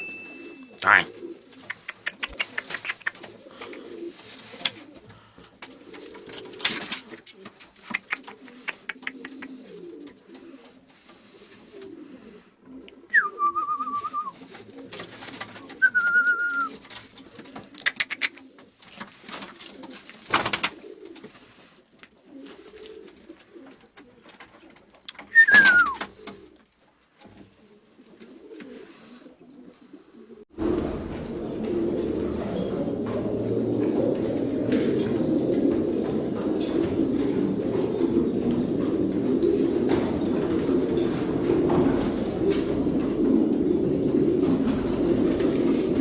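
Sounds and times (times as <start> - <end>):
pigeons cooing: 0.0 - 46.0
wing flutters: 0.2 - 12.0
short clear whistles: 13.1 - 14.4, 15.8 - 16.8, 25.2 - 26.1.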